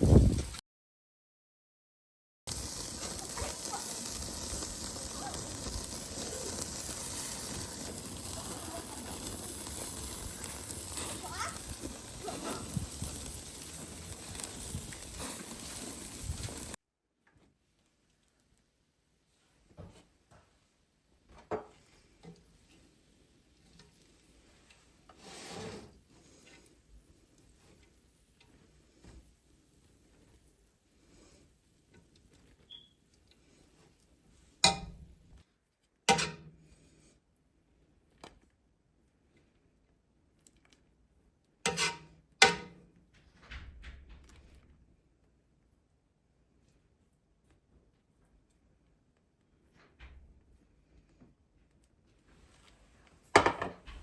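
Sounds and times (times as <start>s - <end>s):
steady hiss: 2.5s - 16.8s
rubbing scrape: 25.2s - 26.4s.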